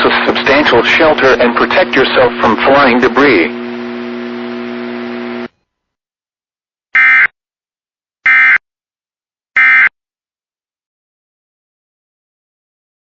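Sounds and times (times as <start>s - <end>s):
steady hum with hiss: 0.0s - 5.5s.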